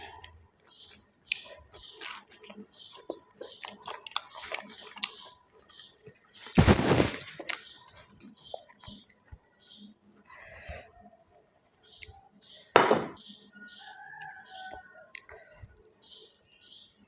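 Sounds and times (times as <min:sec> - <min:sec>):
wet chewing: 0:00.0 - 0:06.5, 0:14.2 - 0:15.8
loud crunches: 0:06.5 - 0:07.6.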